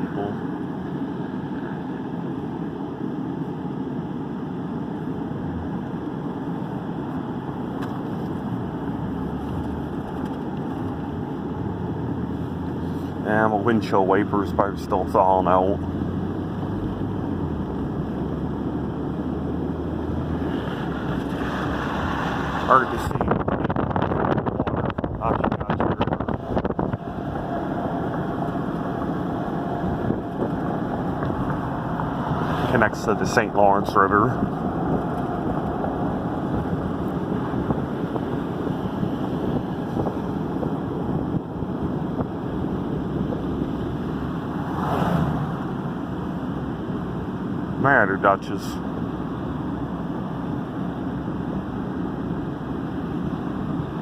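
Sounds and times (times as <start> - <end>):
car cabin road and engine noise: 0.0 - 54.0
low hum: 15.8 - 47.7.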